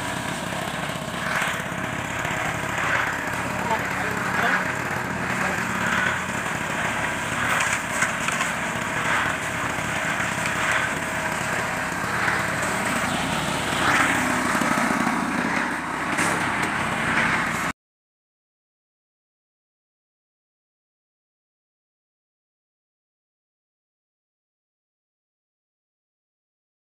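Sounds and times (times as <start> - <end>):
small engine running: 0.0 - 17.7
scraping and knocking: 1.0 - 17.7.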